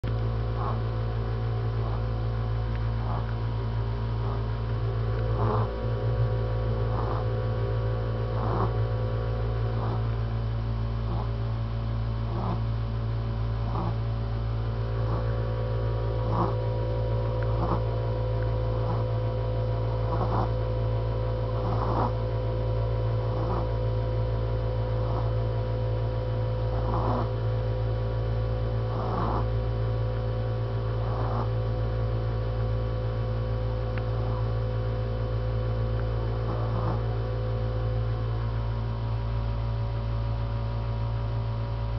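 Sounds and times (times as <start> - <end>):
loud steady hum: 0.0 - 41.9
soft snoring: 0.5 - 1.1, 1.8 - 10.4, 11.0 - 12.8, 13.5 - 22.5, 23.1 - 23.9, 24.9 - 25.5, 26.6 - 27.6, 28.8 - 29.6, 30.9 - 31.6, 36.4 - 37.2.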